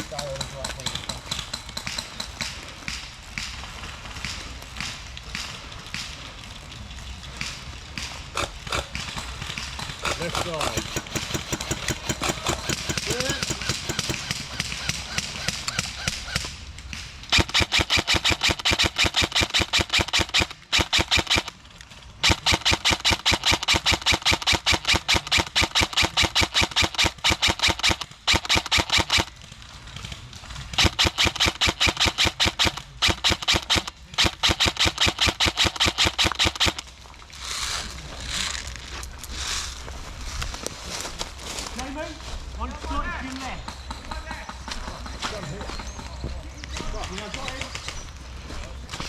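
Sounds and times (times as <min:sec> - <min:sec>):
airsoft gun firing full auto: 0:08.3 - 0:16.5, 0:17.3 - 0:21.6, 0:22.2 - 0:29.4, 0:30.7 - 0:36.8.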